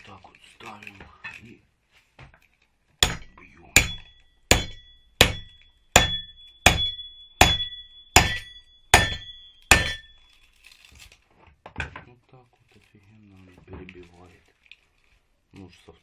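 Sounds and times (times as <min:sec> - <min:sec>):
hammer blows on metal: 0:03.0 - 0:10.2
short metallic ringing: 0:03.1 - 0:10.4.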